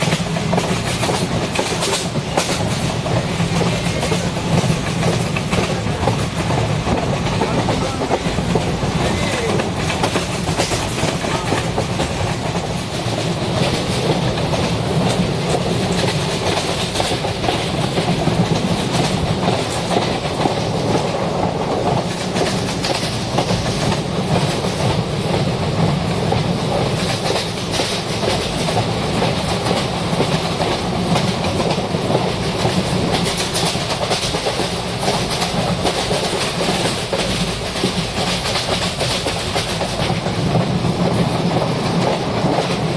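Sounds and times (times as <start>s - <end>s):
train rumbling: 0.0s - 42.9s
wheels clicking on rails: 0.0s - 42.9s.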